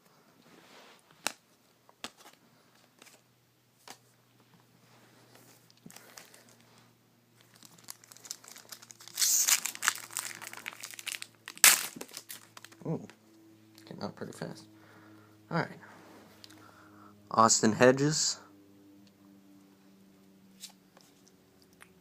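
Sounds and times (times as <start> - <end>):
wrapper crinkling and tearing: 5.7 - 6.7, 7.4 - 12.8.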